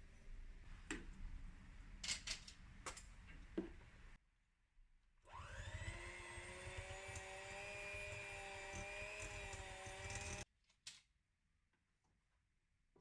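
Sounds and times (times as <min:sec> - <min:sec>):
kitchen appliance motor whining: 0:05.3 - 0:10.5.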